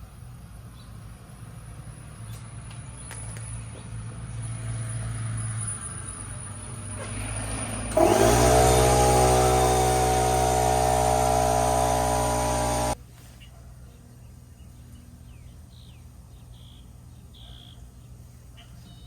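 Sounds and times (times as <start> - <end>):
tire inflator compressor buzzing: 7.1 - 13.0.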